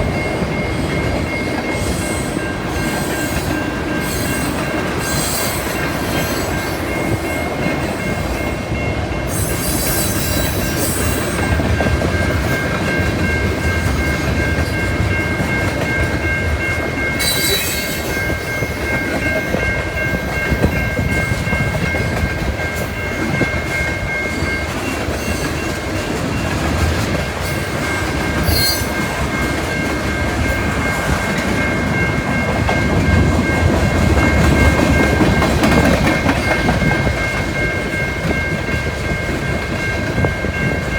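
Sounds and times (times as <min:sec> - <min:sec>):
freight train cars on rails: 0:00.0 - 0:40.9
high-pitched wheel squeal: 0:17.2 - 0:18.1, 0:28.4 - 0:28.9.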